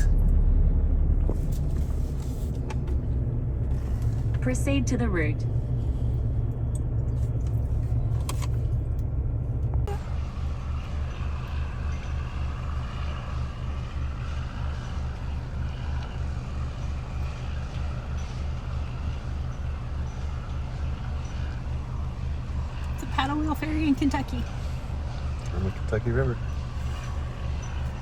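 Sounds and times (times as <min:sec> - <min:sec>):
road noise: 0:00.0 - 0:28.0
truck engine rumble: 0:00.0 - 0:28.0.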